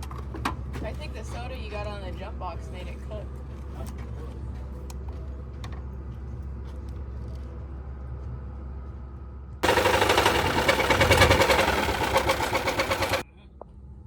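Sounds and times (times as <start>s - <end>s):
car engine knocking: 9.6s - 13.2s.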